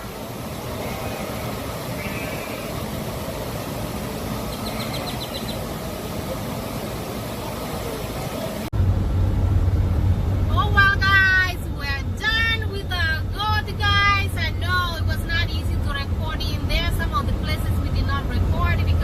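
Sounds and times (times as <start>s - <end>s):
low steady hum: 0.0s - 19.0s
rushing outdoor noise: 0.0s - 19.0s
faint chirps: 4.4s - 5.9s.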